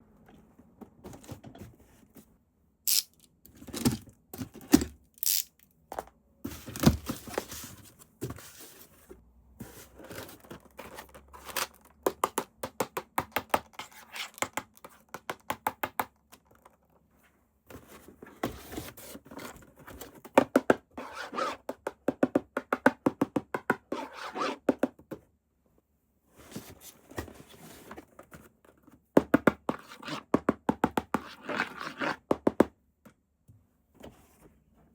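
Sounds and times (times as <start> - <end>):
packaging scraping and tearing: 2.9 - 3.2, 5.2 - 5.5.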